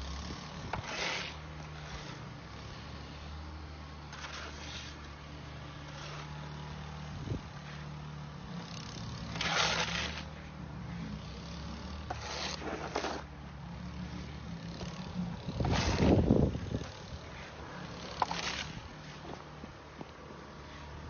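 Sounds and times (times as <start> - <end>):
short scraping sounds: 0.7 - 2.2, 4.1 - 5.0, 9.2 - 10.4, 12.1 - 13.3.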